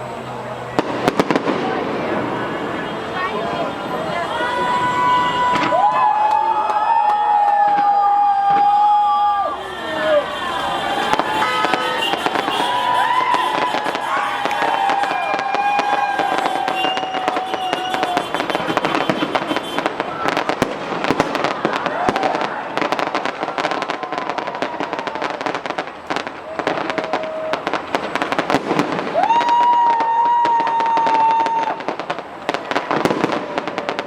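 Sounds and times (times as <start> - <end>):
fireworks bangs and crackling: 0.1 - 34.0
whistling fireworks: 0.7 - 34.0.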